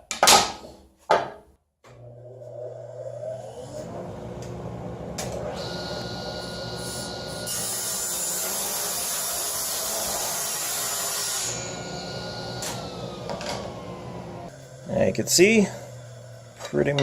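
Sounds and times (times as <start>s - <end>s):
table saw motor running: 2.0s - 17.0s
saw blade cutting wood: 5.6s - 13.8s.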